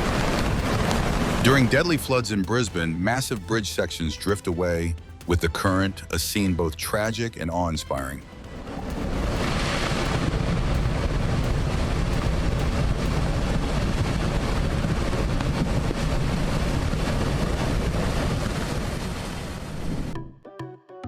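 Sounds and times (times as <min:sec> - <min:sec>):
wind buffeting microphone: 0:00.0 - 0:02.0, 0:08.4 - 0:20.2
floodwater rushing: 0:00.0 - 0:05.4, 0:08.3 - 0:20.1.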